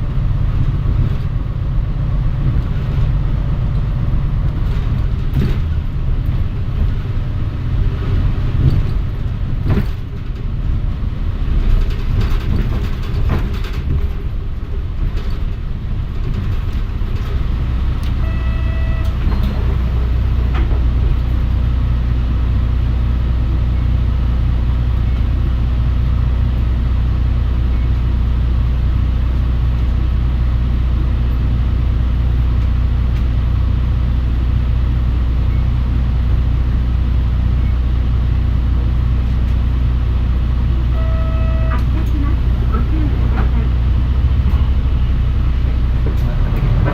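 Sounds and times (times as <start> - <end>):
bus engine rumbling: 0.0 - 46.9
knocks and rattles: 11.6 - 17.5
short electronic beep: 18.2 - 19.6, 40.9 - 41.9.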